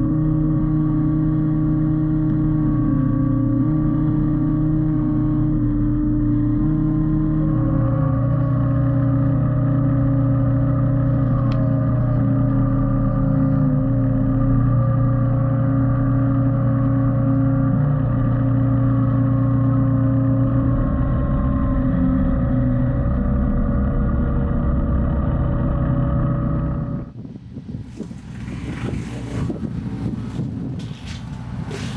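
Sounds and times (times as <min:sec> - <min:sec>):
excavator diesel engine under load: 0:00.0 - 0:31.9
mulcher rotor whine: 0:00.0 - 0:31.9.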